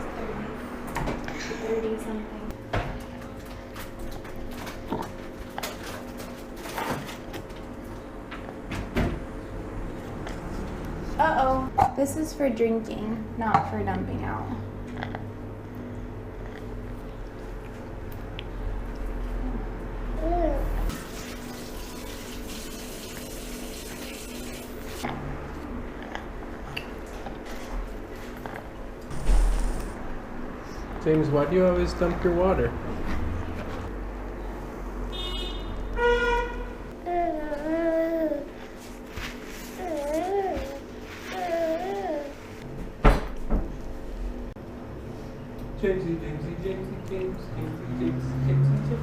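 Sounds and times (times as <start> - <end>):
water running: 20.9 - 25.0.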